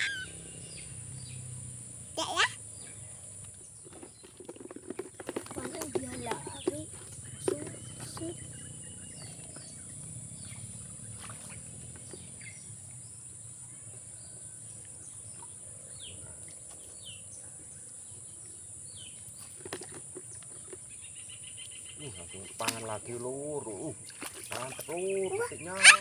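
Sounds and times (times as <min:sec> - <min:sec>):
falling bird chirps: 0:00.0 - 0:01.4.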